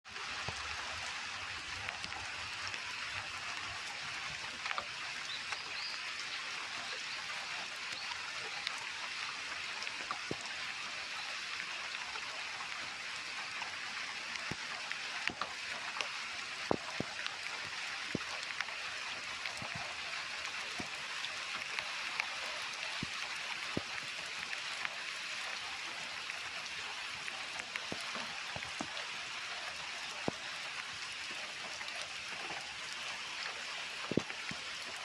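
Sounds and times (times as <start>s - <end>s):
steady rain hiss: 0.1s - 35.0s
close drips landing: 14.4s - 25.0s, 26.0s - 32.7s, 33.6s - 35.0s.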